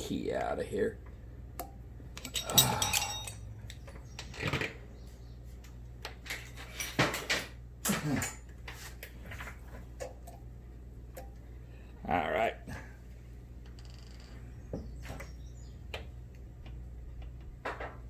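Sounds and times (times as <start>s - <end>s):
low electrical hum: 0.0s - 18.0s
metal clanks: 2.2s - 3.6s
tools clinking on workbench: 2.2s - 3.6s.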